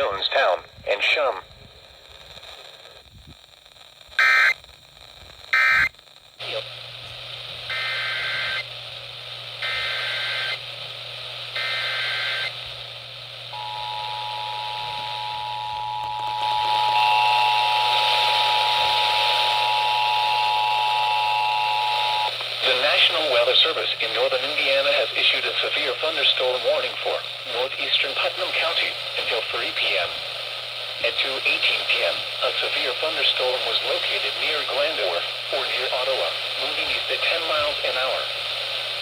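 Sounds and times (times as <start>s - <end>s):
low hum: 13.5s - 22.5s
two-tone attention signal: 13.6s - 17.9s.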